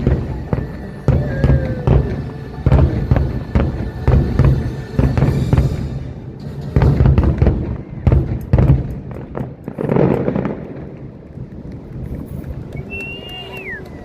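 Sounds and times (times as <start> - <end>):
music playing: 0.0 - 9.2
fireworks bangs and booms: 0.0 - 12.8.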